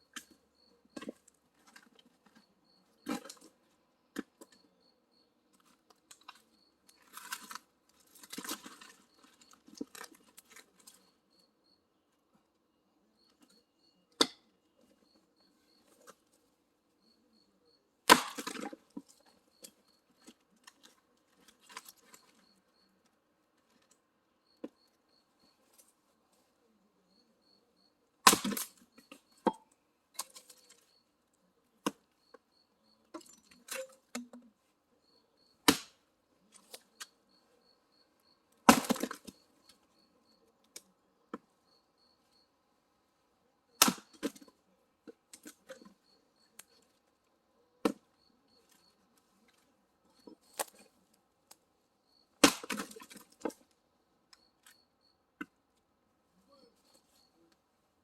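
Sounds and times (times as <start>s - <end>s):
wood cracking as it splits: 18.1s - 18.8s, 28.2s - 28.8s, 35.6s - 36.0s, 38.6s - 39.4s, 43.8s - 44.4s, 52.4s - 53.6s
split wood pieces clattering: 38.7s - 39.4s, 52.4s - 53.6s.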